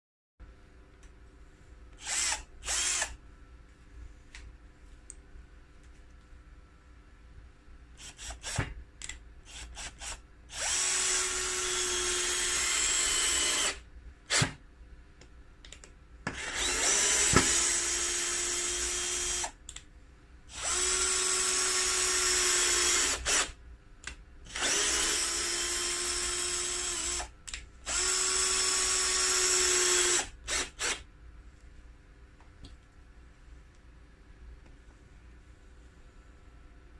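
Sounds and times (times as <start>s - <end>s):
cordless drill driving screws: 2.0s - 3.1s, 9.5s - 14.5s, 16.3s - 19.6s, 20.5s - 23.5s, 24.5s - 27.3s, 27.9s - 31.0s.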